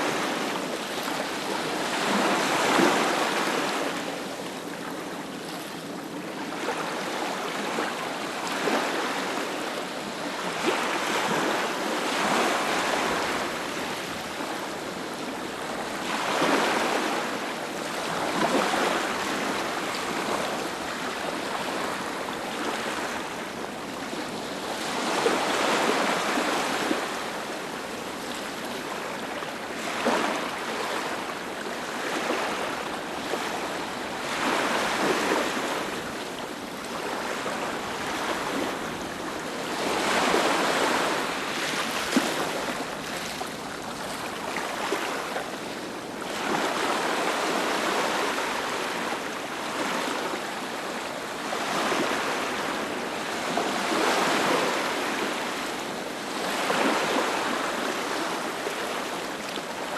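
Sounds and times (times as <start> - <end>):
ocean waves breaking: 29.8 - 50.3.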